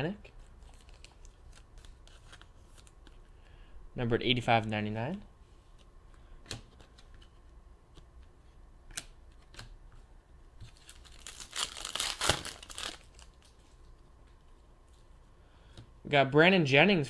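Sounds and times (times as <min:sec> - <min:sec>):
wrapper crinkling and tearing: 0:00.6 - 0:03.0, 0:10.7 - 0:13.8.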